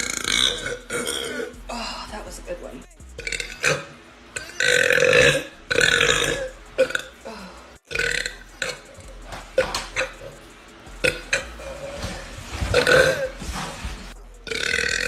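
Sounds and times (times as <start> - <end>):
woman burping: 0.0 - 2.1, 3.2 - 8.8, 12.8 - 13.4, 14.5 - 15.0.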